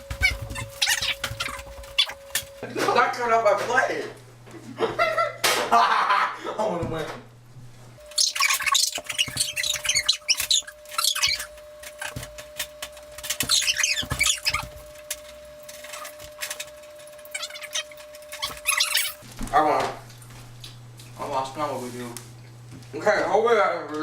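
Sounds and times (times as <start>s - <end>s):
high-pitched squeaky sped-up chatter: 0.2s - 2.4s, 8.1s - 12.2s, 13.4s - 14.7s, 17.3s - 19.2s.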